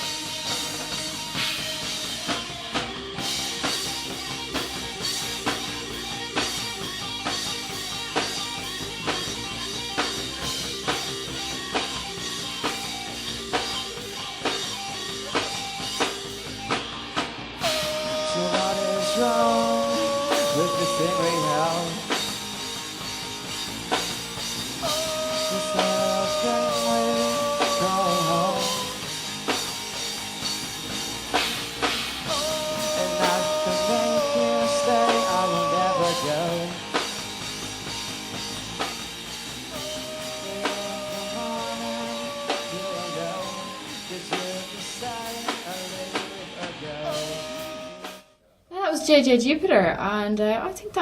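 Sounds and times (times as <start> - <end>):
drum kit beat: 0.0 - 48.3
rock band playing live: 0.0 - 48.3
person singing: 17.6 - 22.3, 24.8 - 29.6, 32.2 - 37.0, 39.7 - 48.4.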